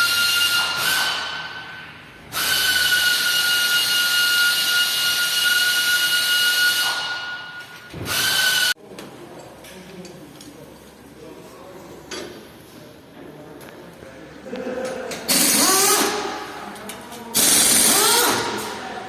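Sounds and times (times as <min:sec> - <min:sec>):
high-pitched whistle: 0:02.4 - 0:08.7.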